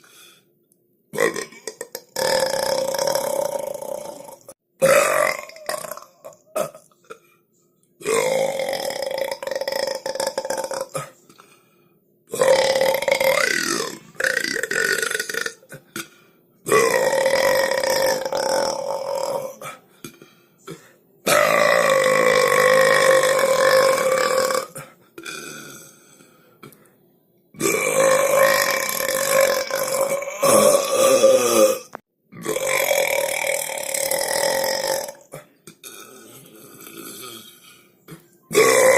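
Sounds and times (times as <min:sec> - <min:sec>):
long loud belches: 0:01.2 - 0:07.0, 0:08.0 - 0:11.2, 0:12.3 - 0:16.1, 0:16.7 - 0:19.8, 0:20.7 - 0:26.0, 0:27.6 - 0:37.6, 0:38.5 - 0:38.9.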